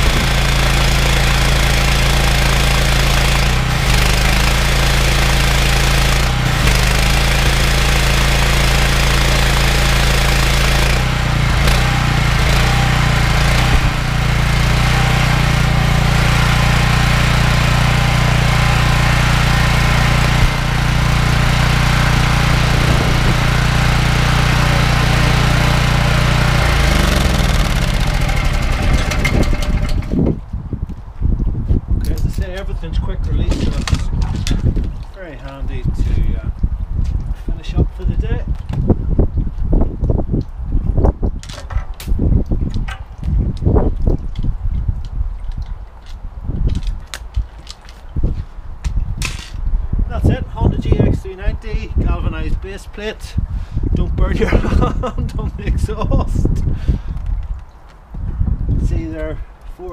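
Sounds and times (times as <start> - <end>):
petrol engine running: 0.0 - 30.2
pressure washer pump: 0.0 - 30.4.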